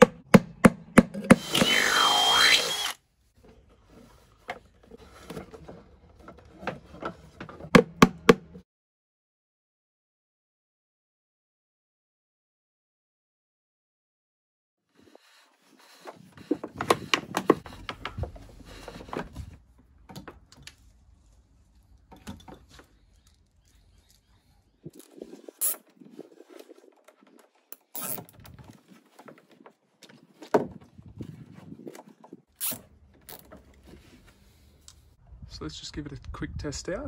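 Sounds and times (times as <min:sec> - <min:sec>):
handling knocks and rustles: 0:03.4 - 0:08.6, 0:15.2 - 0:34.9.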